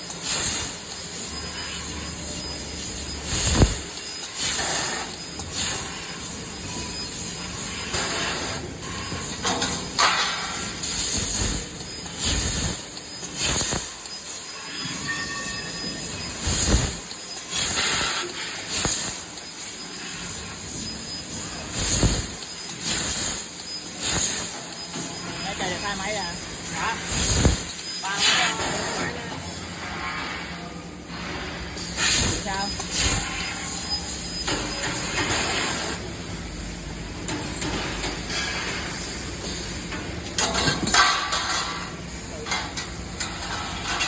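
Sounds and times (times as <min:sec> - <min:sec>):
laser cutter air hiss: 0:00.0 - 0:44.0.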